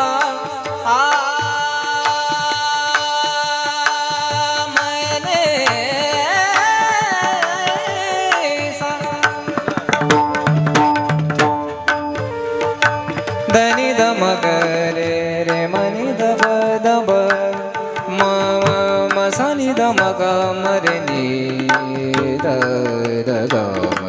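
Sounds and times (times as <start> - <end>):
held accompaniment tones: 9.3 - 16.1.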